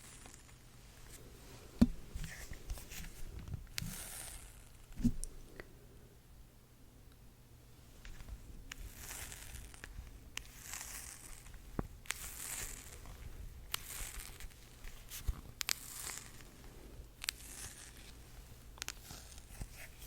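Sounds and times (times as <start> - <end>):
crackling peeling noise: 8.7 - 16.6.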